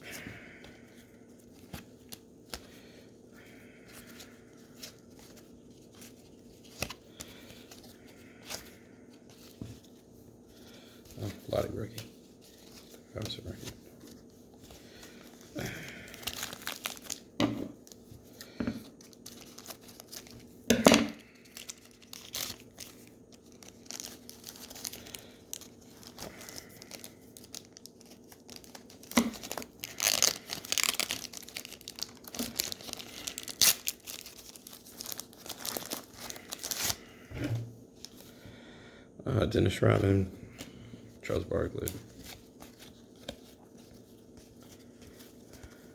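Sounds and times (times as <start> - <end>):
wrappers torn and crinkled: 14.8 - 37.2.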